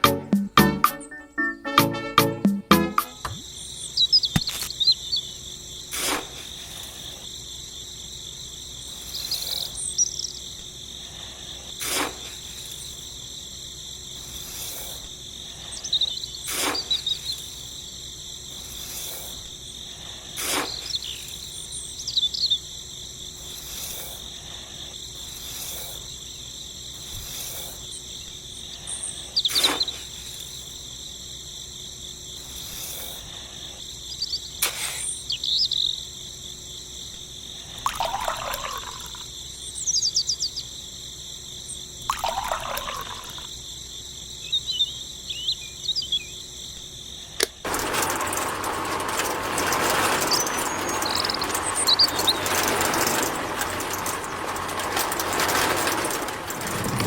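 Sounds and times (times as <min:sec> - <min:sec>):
crickets chirping: 0:02.8 - 0:57.0
bird chirps: 0:03.0 - 0:05.4, 0:20.7 - 0:22.7, 0:34.1 - 0:36.0, 0:39.7 - 0:40.7, 0:44.4 - 0:46.4.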